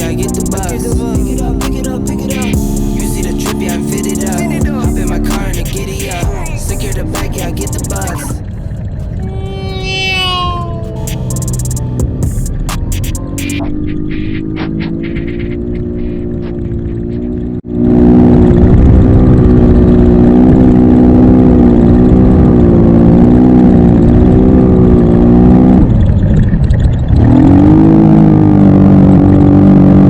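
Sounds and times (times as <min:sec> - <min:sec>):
scooter engine revving: 0:00.0 - 0:13.6.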